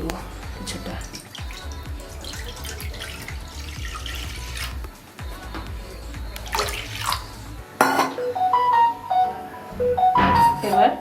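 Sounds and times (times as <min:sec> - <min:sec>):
background music: 0:00.0 - 0:11.0
water pouring and splashing: 0:00.8 - 0:04.8, 0:06.4 - 0:07.4.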